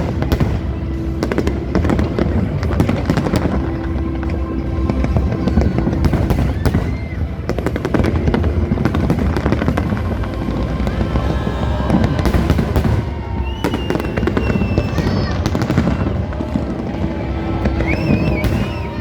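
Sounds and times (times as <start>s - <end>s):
fireworks bangs and crackles: 0.0s - 19.0s
low rumble: 0.0s - 19.0s
music: 0.0s - 19.0s.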